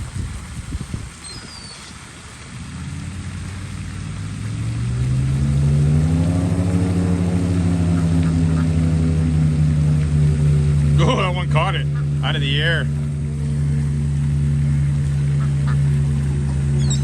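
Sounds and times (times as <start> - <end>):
bird chirps: 1.2 - 2.0, 16.7 - 17.0
vehicle engine revving: 2.4 - 17.0.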